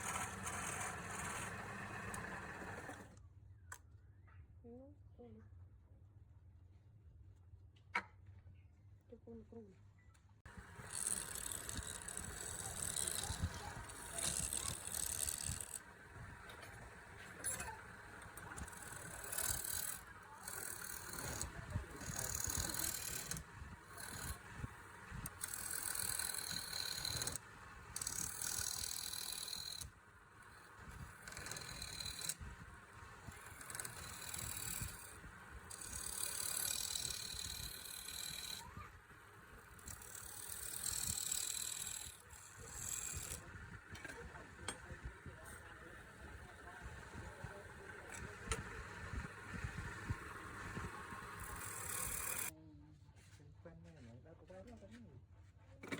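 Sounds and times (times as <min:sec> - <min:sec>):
cutting tool scraping wood: 0:00.0 - 0:03.1, 0:10.5 - 0:29.9, 0:30.7 - 0:32.4, 0:33.2 - 0:38.7, 0:49.6 - 0:52.5
wood lathe turning: 0:00.0 - 0:03.2, 0:10.5 - 0:52.5.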